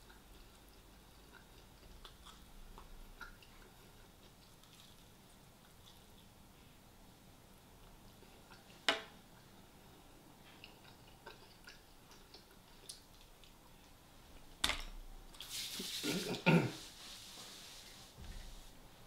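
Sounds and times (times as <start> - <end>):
person eating: 0.0 - 6.3, 10.4 - 13.7
rustling: 15.4 - 18.8.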